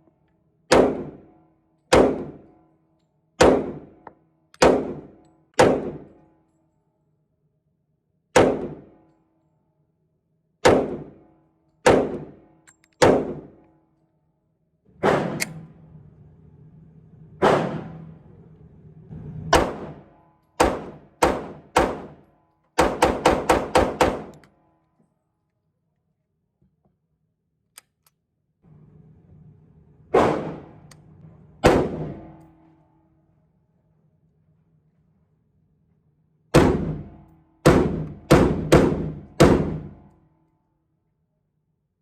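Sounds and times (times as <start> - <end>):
gunshots: 0.7 - 1.3, 1.9 - 2.4, 3.4 - 4.0, 4.6 - 6.1, 8.4 - 9.0, 10.6 - 11.2, 11.8 - 12.4, 13.0 - 13.6, 15.0 - 15.7, 17.4 - 18.2, 19.5 - 22.2, 22.8 - 24.4, 30.1 - 30.9, 31.6 - 32.4, 36.6 - 40.0.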